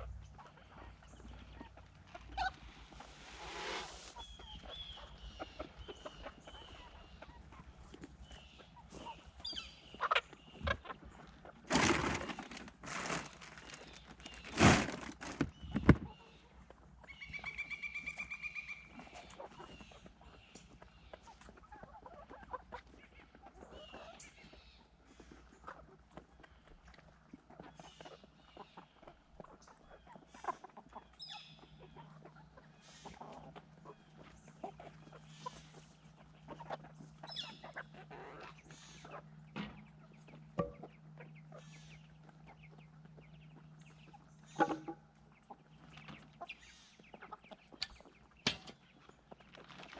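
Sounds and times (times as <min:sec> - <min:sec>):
hens clucking: 0:00.0 - 0:49.9
steady low hum: 0:29.8 - 0:49.5
rustling and knocks from handling: 0:44.6 - 0:45.0.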